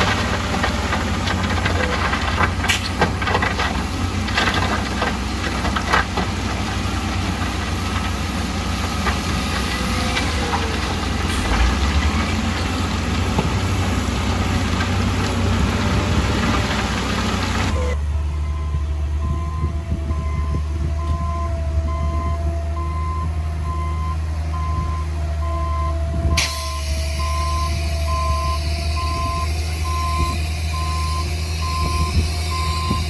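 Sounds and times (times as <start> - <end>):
metal clanks and knocks: 0.0 - 8.2
diesel engine running: 0.0 - 33.0.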